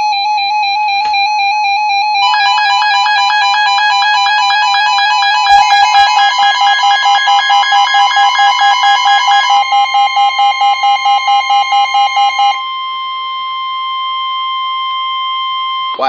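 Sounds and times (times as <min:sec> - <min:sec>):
pulsing alarm beeps: 0:00.0 - 0:16.0
steady alert tone: 0:02.2 - 0:09.5.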